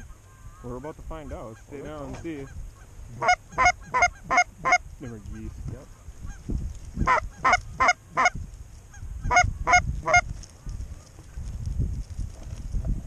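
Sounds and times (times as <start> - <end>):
goose honking: 0.0 - 6.4, 7.0 - 10.3
wind on microphone: 0.0 - 13.0.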